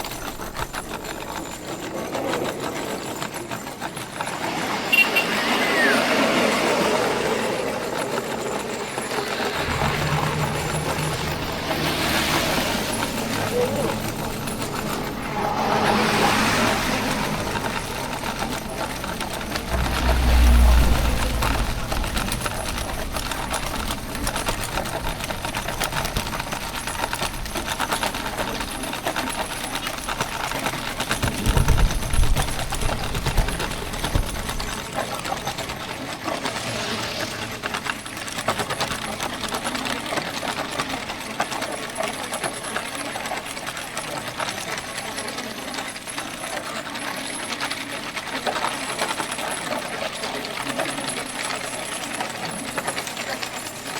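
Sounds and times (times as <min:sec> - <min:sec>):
cart wheels rattling on road: 0:00.0 - 0:53.9
low rumble: 0:04.2 - 0:26.9, 0:35.9 - 0:38.4.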